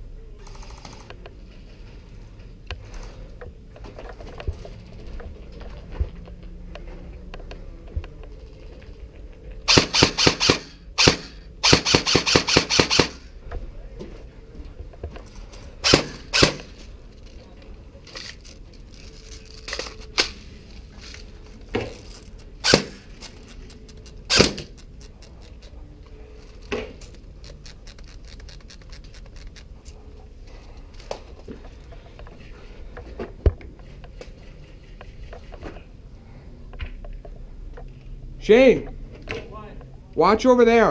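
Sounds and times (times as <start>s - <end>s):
airsoft gun bursts: 9.7s - 13.3s, 15.8s - 16.8s, 22.6s - 23.0s, 24.3s - 24.7s
airsoft single shots: 9.7s - 13.3s, 15.8s - 16.7s.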